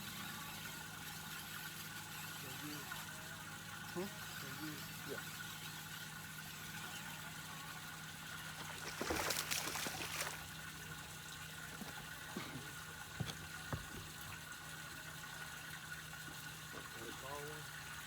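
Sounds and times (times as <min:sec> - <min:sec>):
water splashing: 0:08.5 - 0:14.8.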